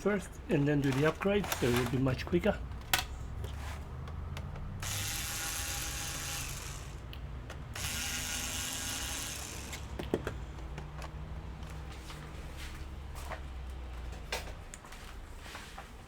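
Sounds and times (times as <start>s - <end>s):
electric screwdriver whirring: 4.8s - 10.0s.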